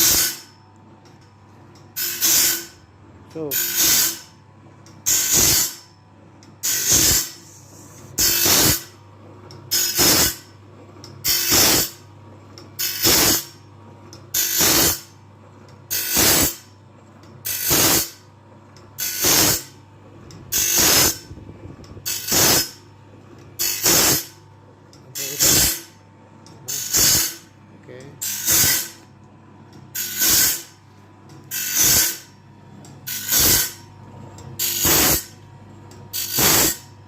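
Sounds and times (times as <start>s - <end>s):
blade grinding rasp: 0.0s - 0.5s, 2.0s - 2.8s, 3.5s - 4.3s, 6.6s - 8.9s, 17.5s - 18.1s, 19.0s - 19.7s, 20.5s - 21.2s, 22.1s - 22.8s, 23.6s - 24.3s, 25.2s - 25.9s, 26.7s - 27.5s, 28.2s - 29.0s, 30.0s - 30.7s, 31.5s - 32.3s, 33.1s - 33.8s, 34.6s - 35.3s, 36.2s - 36.9s
low motor hum: 19.6s - 23.6s.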